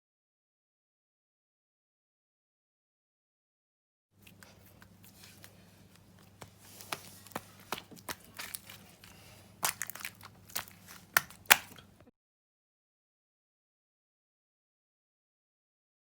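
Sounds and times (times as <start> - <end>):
slime squished in hands: 4.2 - 12.0
faint electrical hum: 4.2 - 12.1.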